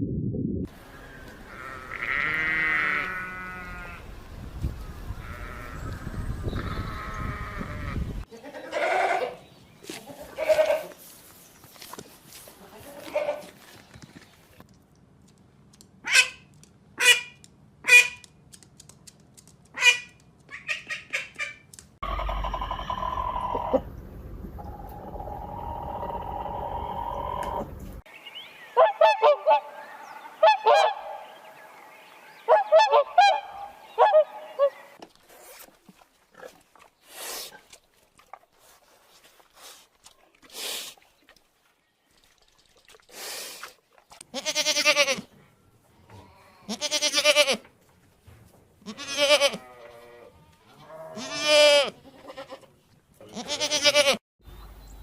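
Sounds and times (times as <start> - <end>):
long quavering bleats: 0.8 - 4.1, 5.2 - 5.9, 6.6 - 9.4, 44.3 - 45.3, 46.0 - 47.6, 48.8 - 54.2.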